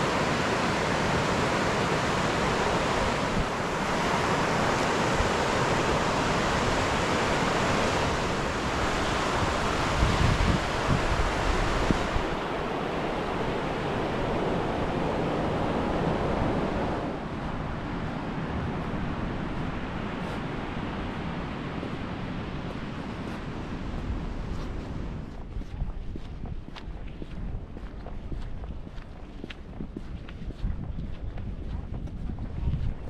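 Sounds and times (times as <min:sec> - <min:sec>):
surf washing onto sandy beach: 0:00.0 - 0:25.3
wind buffeting microphone: 0:00.0 - 0:33.0.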